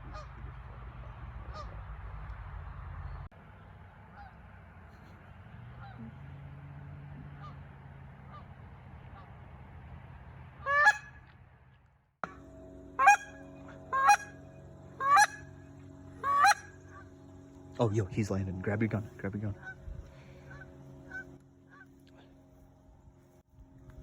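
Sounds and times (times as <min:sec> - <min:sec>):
geese honking: 0:00.0 - 0:03.0, 0:03.9 - 0:09.5, 0:10.6 - 0:11.2, 0:12.2 - 0:23.4.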